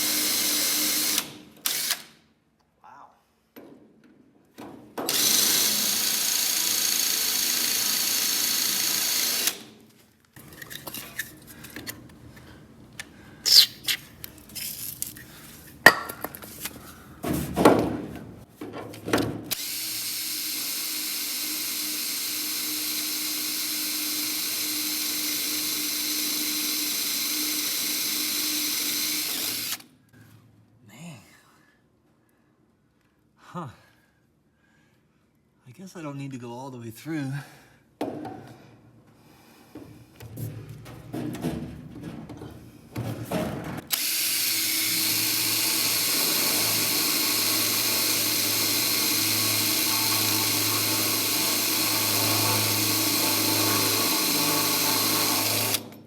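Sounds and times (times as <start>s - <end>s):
power drill boring into steel: 0.0s - 2.1s, 5.1s - 9.6s, 19.5s - 29.8s, 43.9s - 56.0s
drill clinks and knocks: 5.0s - 9.6s.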